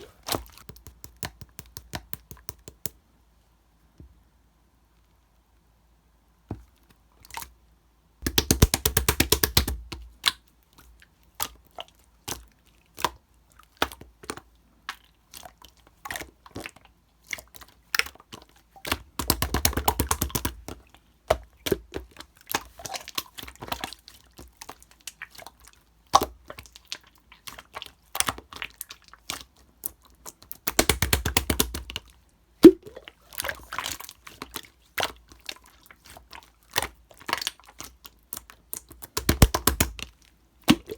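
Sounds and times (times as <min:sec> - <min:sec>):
slime pops and squelches: 0:00.3 - 0:03.0, 0:08.2 - 0:10.4, 0:19.2 - 0:20.6, 0:30.6 - 0:32.0, 0:32.6 - 0:33.1, 0:39.0 - 0:40.1, 0:40.7 - 0:40.9.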